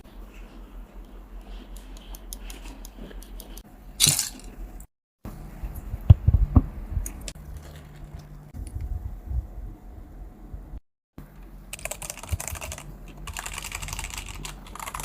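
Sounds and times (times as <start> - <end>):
plastic keycaps clicking and rattling: 11.8 - 15.0.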